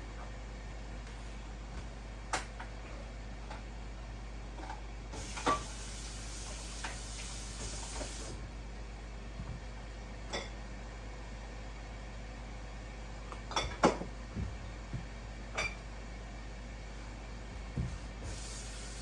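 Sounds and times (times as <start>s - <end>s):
hiss: 5.2s - 8.4s, 18.2s - 19.0s
steady low hum: 7.5s - 19.0s.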